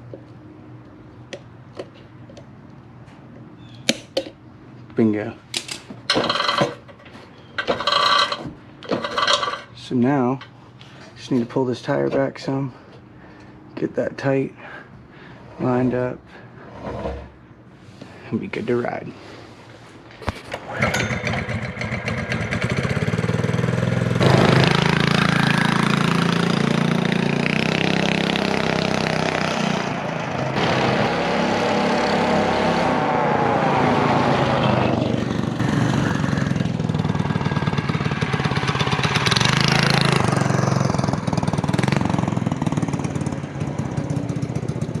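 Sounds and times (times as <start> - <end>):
small engine revving: 20.5 - 45.0.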